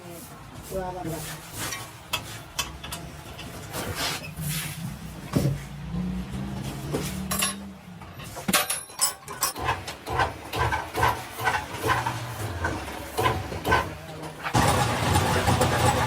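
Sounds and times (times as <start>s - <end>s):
metallic clinks: 8.6s - 9.6s.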